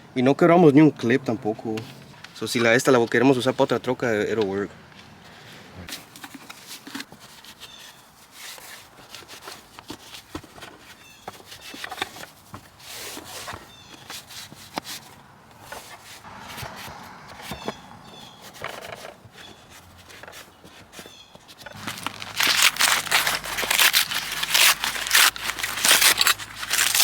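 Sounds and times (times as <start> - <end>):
plastic parts clicking and rubbing: 5.9 - 27.0.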